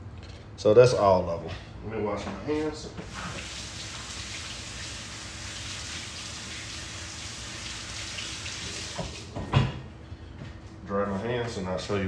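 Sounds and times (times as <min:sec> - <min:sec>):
tap running into sink: 0:08.5 - 0:09.7.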